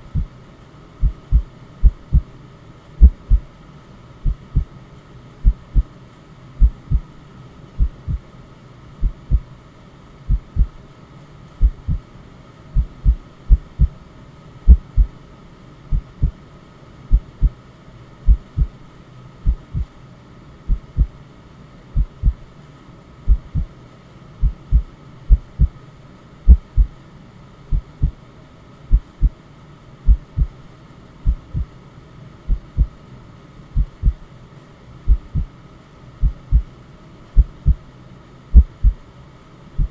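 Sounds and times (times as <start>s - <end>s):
heartbeat thumps: 0.0s - 0.3s, 1.0s - 2.3s, 3.0s - 3.5s, 4.2s - 4.7s, 5.4s - 5.9s, 6.6s - 7.0s, 7.8s - 8.2s, 9.0s - 9.4s, 10.3s - 10.8s, 11.6s - 12.0s, 12.8s - 14.0s, 14.7s - 15.1s, 15.9s - 16.4s, 17.1s - 17.6s, 18.3s - 18.8s, 19.4s - 19.9s, 20.7s - 21.2s, 22.0s - 22.4s, 23.3s - 23.7s, 24.4s - 25.8s, 26.5s - 27.0s, 27.7s - 28.2s, 28.9s - 29.4s, 30.1s - 30.6s, 31.2s - 31.7s, 32.5s - 33.0s, 33.8s - 34.2s, 35.1s - 35.5s, 36.2s - 36.7s, 37.4s - 37.8s, 38.5s - 39.0s
faint white noise hiss: 0.0s - 39.9s.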